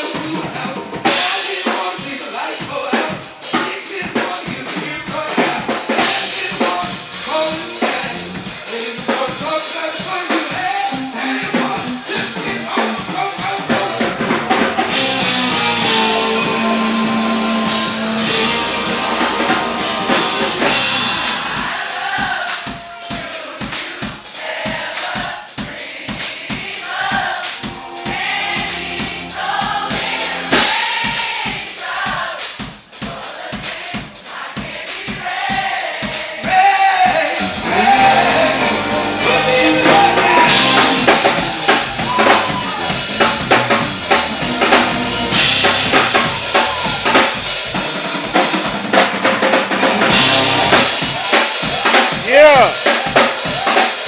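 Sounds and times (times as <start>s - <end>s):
live band playing: 0.0s - 24.7s, 26.4s - 33.0s, 35.6s - 54.0s
several voices singing: 0.0s - 54.0s
bass drum beat: 6.0s - 8.6s, 10.5s - 23.3s, 27.2s - 30.8s, 36.4s - 53.8s.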